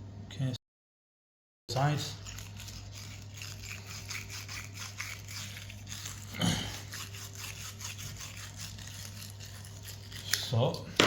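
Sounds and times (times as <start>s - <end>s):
tool scratching inside copper pipe: 2.1s - 10.6s.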